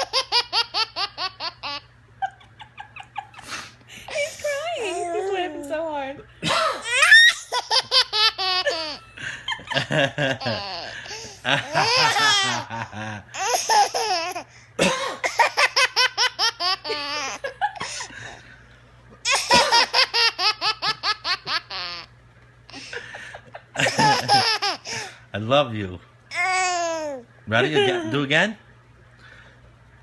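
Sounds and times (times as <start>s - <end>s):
baby belly laughing: 0.0s - 3.6s, 6.6s - 9.0s, 9.7s - 14.5s, 15.2s - 18.0s, 19.2s - 22.1s, 23.8s - 25.1s.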